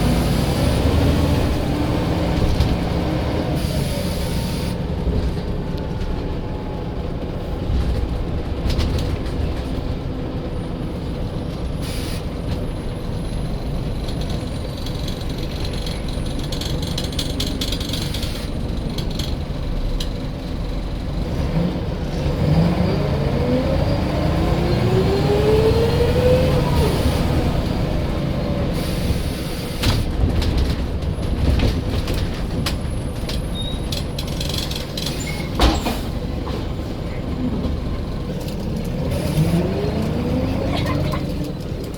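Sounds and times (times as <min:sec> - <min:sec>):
diesel bus engine pulling away: 0:00.0 - 0:41.9
air brake hisses: 0:03.6 - 0:04.8, 0:11.8 - 0:12.4, 0:28.7 - 0:30.0.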